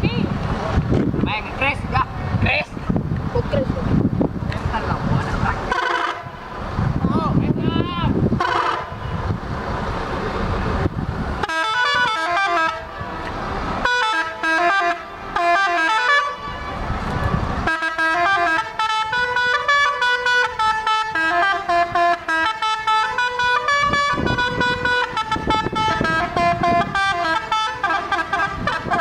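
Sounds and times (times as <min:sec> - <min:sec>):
low engine rumble: 0:00.0 - 0:29.0
multi-tone air horn melody: 0:05.7 - 0:06.4, 0:08.4 - 0:09.2, 0:11.4 - 0:29.0.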